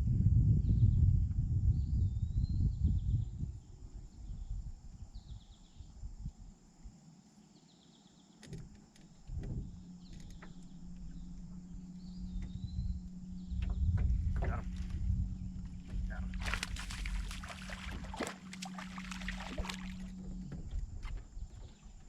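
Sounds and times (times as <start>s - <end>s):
steady low hum: 0.0s - 22.0s
songbird singing: 0.6s - 6.4s, 7.2s - 22.0s
low outdoor rumble: 8.6s - 22.0s.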